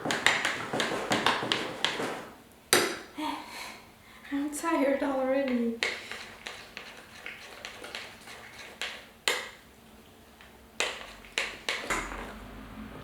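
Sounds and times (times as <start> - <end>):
utensil stirring thick paste: 0.0 - 2.3, 5.5 - 9.6, 10.3 - 11.9.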